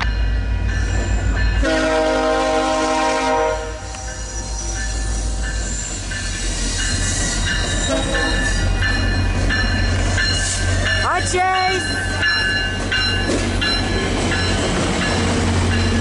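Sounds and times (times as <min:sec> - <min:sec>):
train rumbling: 0:00.0 - 0:16.0
locomotive horn blast: 0:01.6 - 0:04.0, 0:07.9 - 0:08.5
wheel and brake squeal: 0:03.9 - 0:09.3.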